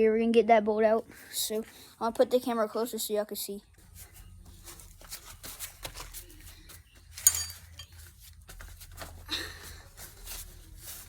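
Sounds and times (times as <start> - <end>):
sharp metallic clink: 7.2 - 7.9.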